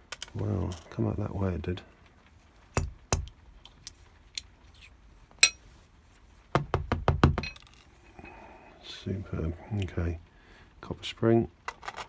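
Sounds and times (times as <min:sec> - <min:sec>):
bright ringing metal clink: 0:05.4 - 0:05.7.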